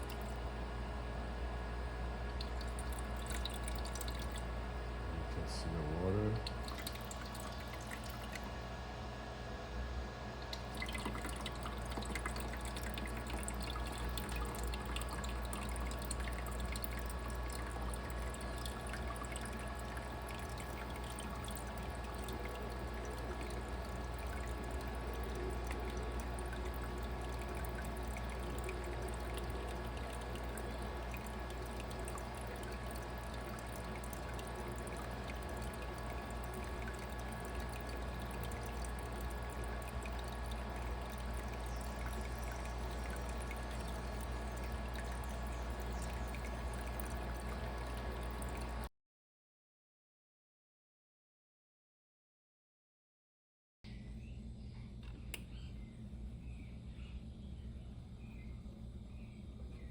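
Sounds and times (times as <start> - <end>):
water trickling over ice tray: 0.0 - 0.5, 2.1 - 4.6, 5.2 - 8.6, 10.4 - 48.9
water pump humming: 0.0 - 48.9.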